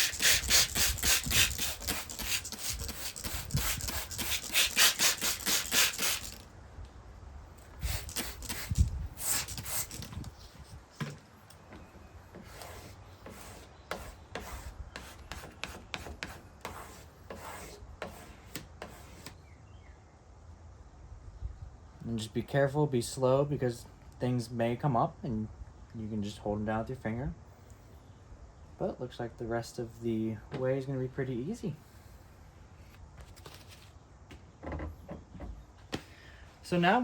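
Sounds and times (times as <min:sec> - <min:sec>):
spray bottle hissing sprays: 0:00.0 - 0:06.4, 0:07.8 - 0:10.3
squeegee rubbing wet vinyl: 0:00.0 - 0:06.4, 0:07.8 - 0:10.6, 0:12.3 - 0:19.3.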